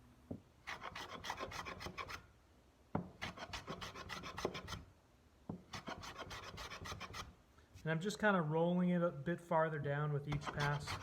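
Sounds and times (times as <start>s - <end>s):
block plane shaving end grain: 0.7s - 2.2s, 5.7s - 7.3s, 10.3s - 11.0s.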